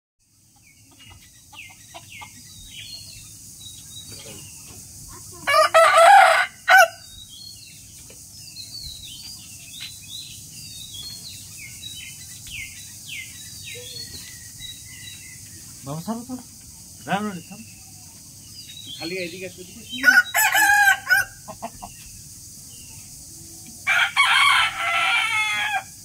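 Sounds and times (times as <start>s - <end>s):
small birds chirping: 0.2s - 26.0s
rooster crowing: 5.4s - 7.1s, 19.9s - 21.7s, 23.8s - 26.0s.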